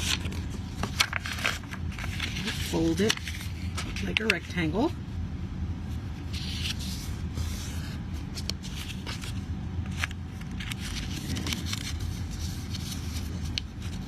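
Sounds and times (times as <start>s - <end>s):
paper being folded and creased: 0.0s - 4.5s, 6.2s - 14.0s.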